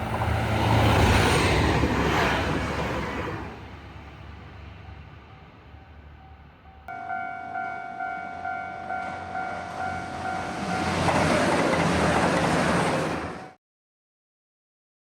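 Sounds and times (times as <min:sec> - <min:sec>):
diesel train passing: 0:00.0 - 0:13.6
level-crossing warning bell: 0:04.8 - 0:11.8.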